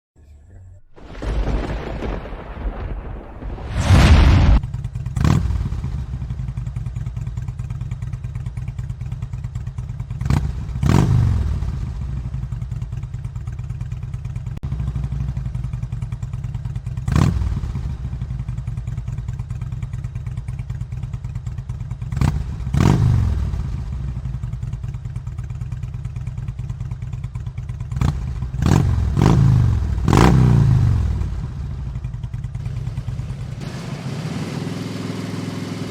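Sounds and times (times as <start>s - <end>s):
motorcycle engine idling and revving: 4.6s - 35.9s.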